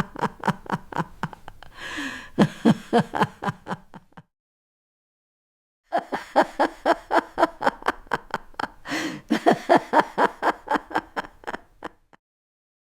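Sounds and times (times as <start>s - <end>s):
person laughing hard: 0.0s - 4.2s, 5.9s - 12.2s
noisy in-breath: 1.7s - 2.4s, 8.8s - 9.3s.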